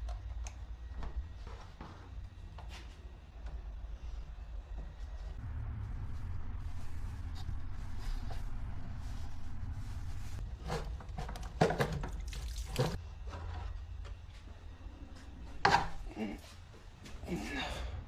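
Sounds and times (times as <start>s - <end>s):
steady low hum: 0.0s - 18.0s
filter parts knocking and clattering: 10.7s - 13.7s.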